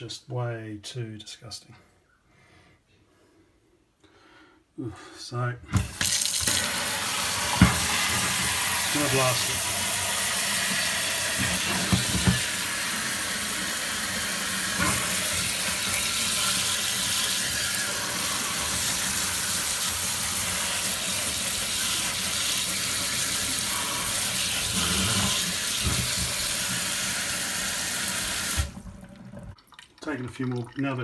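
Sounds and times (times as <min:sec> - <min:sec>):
water jet spraying hard: 0:05.9 - 0:28.8.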